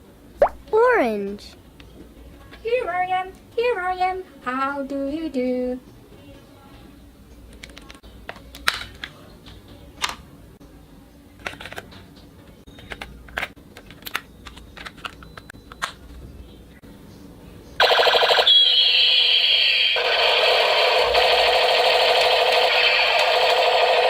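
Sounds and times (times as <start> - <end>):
plastic toys clicking and tapping: 11.4 - 16.0
toy machine gun sound effect: 17.8 - 24.0.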